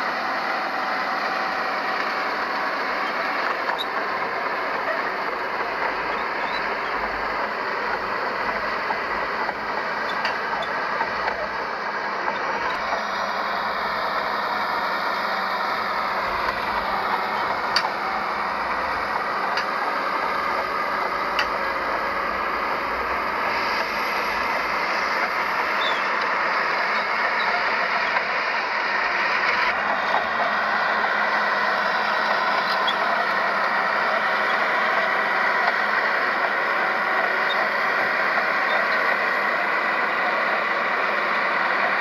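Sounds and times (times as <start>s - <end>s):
heavy machinery running: 0.0s - 42.0s.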